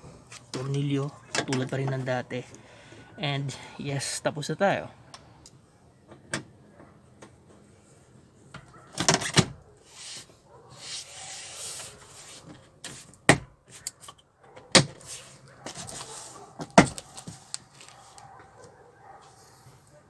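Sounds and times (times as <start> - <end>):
soft rustle: 15.0 - 20.0.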